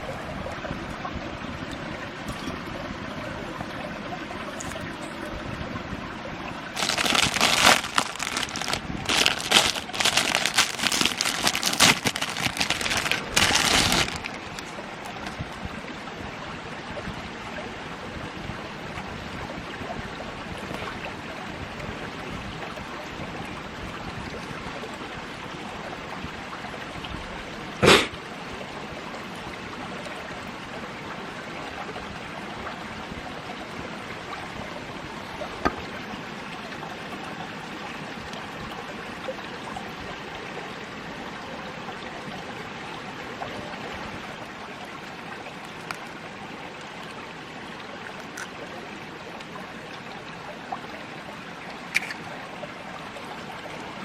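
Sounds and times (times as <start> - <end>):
flowing water rushing: 0.0 - 54.0
noisy handling sounds: 6.8 - 15.6, 51.9 - 52.2.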